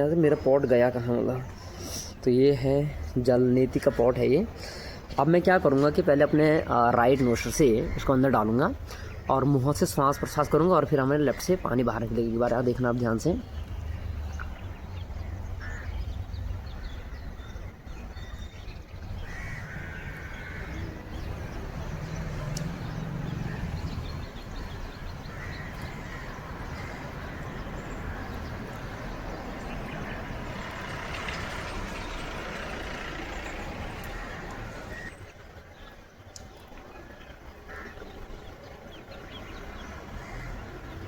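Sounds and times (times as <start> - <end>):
breathing through mouth: 4.6 - 5.1.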